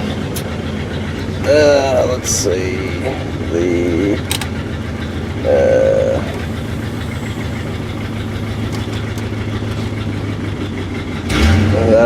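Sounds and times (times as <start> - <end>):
car engine idling rough: 0.0 - 12.0.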